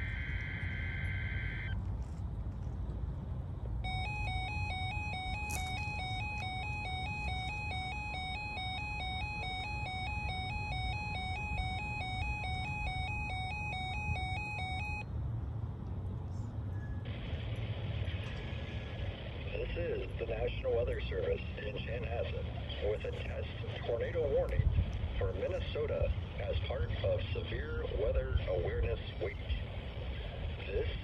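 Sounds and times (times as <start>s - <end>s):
steady electronic alert tone: 3.8s - 15.0s.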